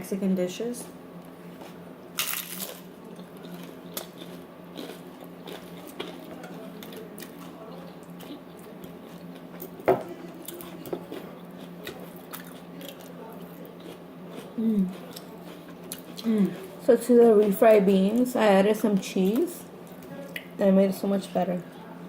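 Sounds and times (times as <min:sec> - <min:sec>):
people chewing and biting food: 0:01.4 - 0:18.3.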